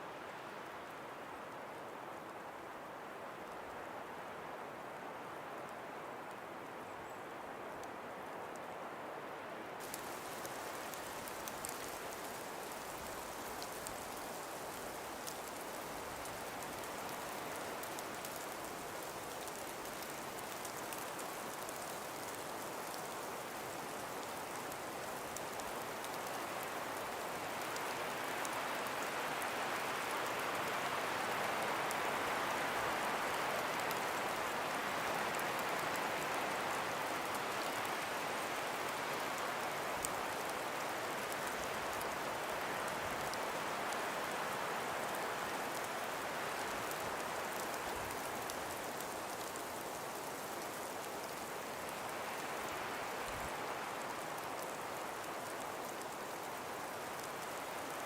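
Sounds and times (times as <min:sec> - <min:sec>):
breeze through trees: 0:00.0 - 0:58.0
faint light ticks: 0:04.9 - 0:08.8, 0:09.8 - 0:58.0.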